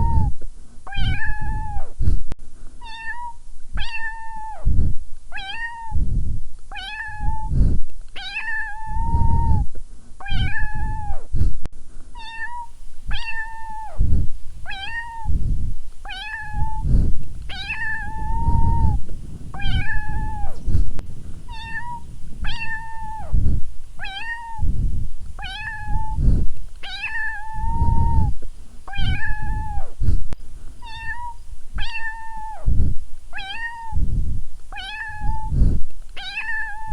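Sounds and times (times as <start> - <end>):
kitten meowing: 0.9 - 1.8, 2.8 - 4.6, 5.3 - 6.0, 6.7 - 7.5, 8.2 - 9.6, 10.2 - 11.1, 12.2 - 15.4, 16.0 - 20.7, 21.5 - 29.9, 30.8 - 34.0, 34.7 - 35.6, 36.2 - 36.9.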